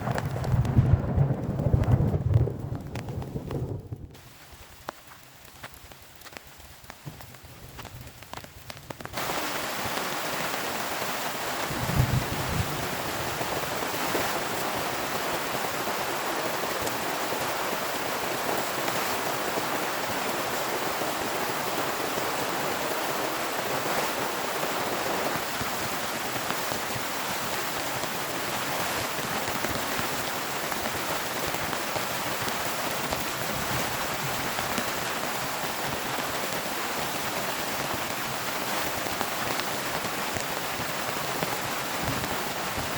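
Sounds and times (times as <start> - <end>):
low rumble: 0.0 - 4.2
heavy rain falling: 0.0 - 42.9.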